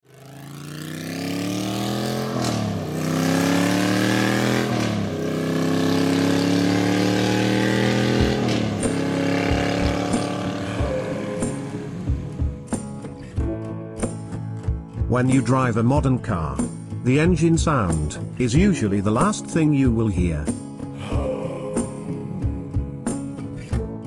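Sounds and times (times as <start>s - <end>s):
vehicle engine accelerating: 0.0s - 13.1s.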